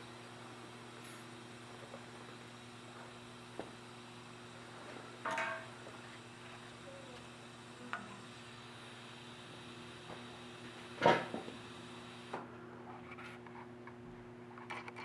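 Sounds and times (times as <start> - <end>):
metallic clank with ring: 1.0 - 1.3
electrical hum: 6.8 - 12.4.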